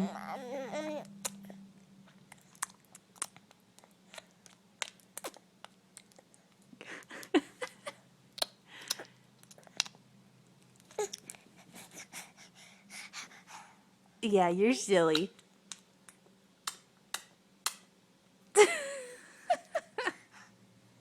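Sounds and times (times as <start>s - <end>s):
wet lip smacks and mouth clicks: 2.3s - 6.7s, 8.4s - 10.0s, 15.7s - 17.8s.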